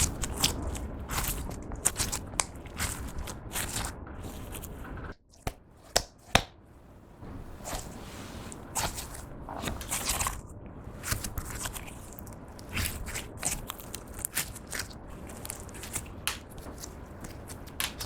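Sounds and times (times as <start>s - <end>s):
slime sticky clicks and crackles: 0.0s - 3.9s, 11.0s - 18.0s.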